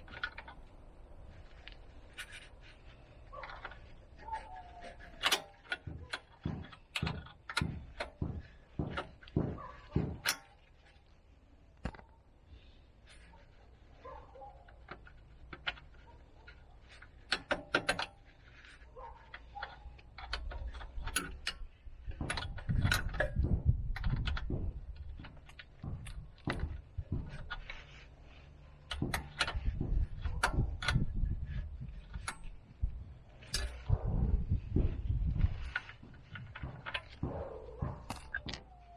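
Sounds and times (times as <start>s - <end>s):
heavy thuds: 5.6s - 10.4s, 28.9s - 38.7s
metal tools clinking: 25.2s - 33.9s.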